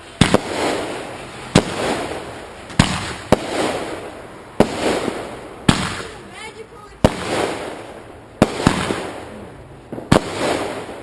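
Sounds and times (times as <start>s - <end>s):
fireworks banging: 0.0s - 11.0s
hissing crackle of fireworks: 0.0s - 11.0s.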